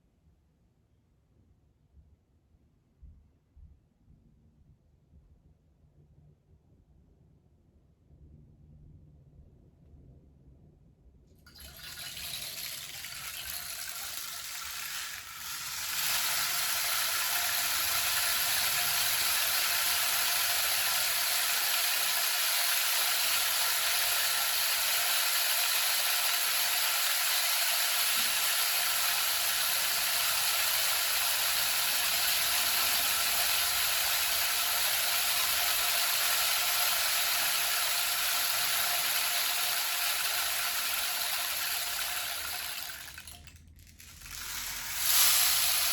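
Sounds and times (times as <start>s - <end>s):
rain stick rattling: 11.5s - 45.9s.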